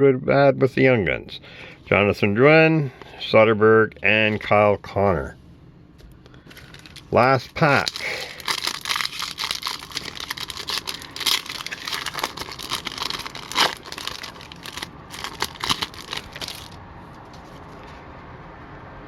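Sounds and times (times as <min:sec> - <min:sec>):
wrapper tearing and crinkling: 0:06.6 - 0:16.8.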